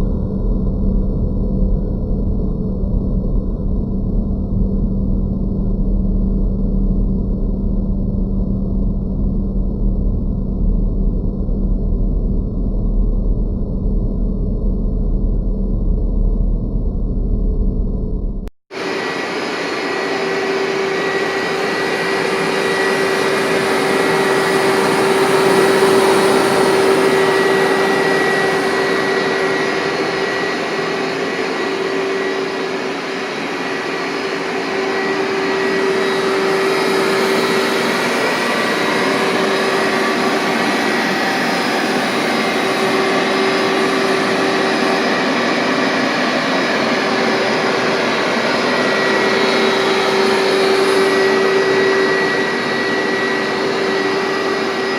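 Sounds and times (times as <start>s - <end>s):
carpet cleaner motor whine: 18.8s - 54.9s.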